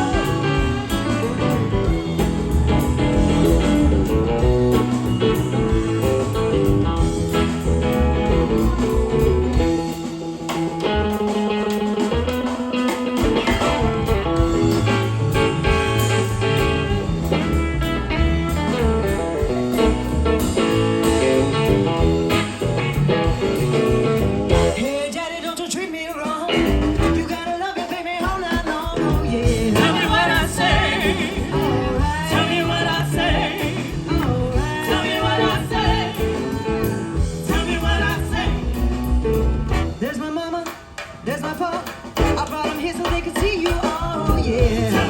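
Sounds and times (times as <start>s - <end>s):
person singing: 0.0s - 3.2s, 24.6s - 39.0s, 40.0s - 45.0s
guitar: 0.0s - 45.0s
live blues band: 0.0s - 45.0s.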